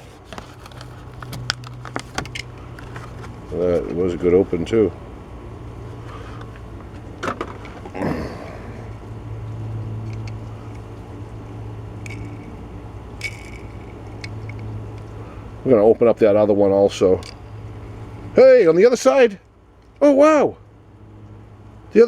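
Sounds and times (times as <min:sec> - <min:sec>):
plastic packaging rustle: 0:00.0 - 0:04.0
steady low hum: 0:00.0 - 0:22.0
light clicks of toy car: 0:10.0 - 0:11.0.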